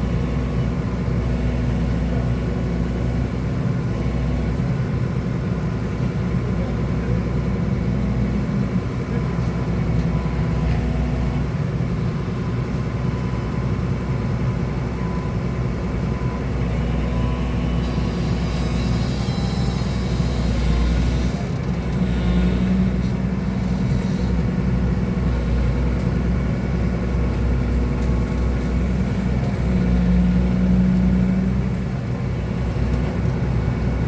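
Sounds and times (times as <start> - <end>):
excavator diesel engine running: 0.0 - 34.0.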